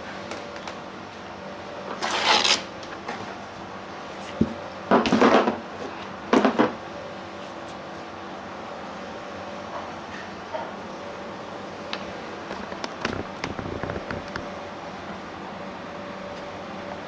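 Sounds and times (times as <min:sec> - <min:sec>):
plastic scraping: 0:12.6 - 0:14.5.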